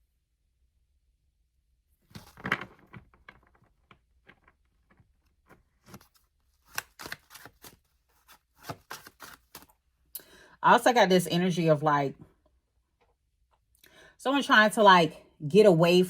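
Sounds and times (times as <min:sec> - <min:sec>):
cards being shuffled: 0:02.1 - 0:03.6, 0:05.4 - 0:09.8.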